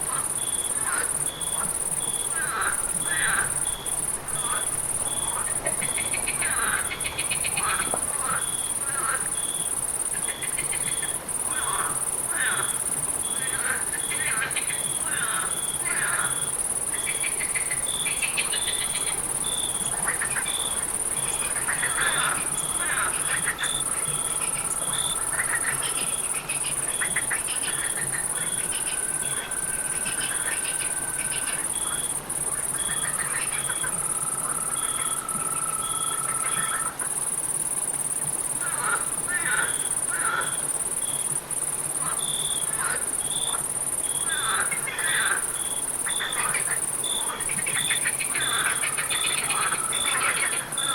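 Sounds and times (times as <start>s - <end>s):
cricket chirps: 0.0s - 50.9s
frog calls: 0.0s - 50.9s
high insect trill: 0.0s - 50.9s.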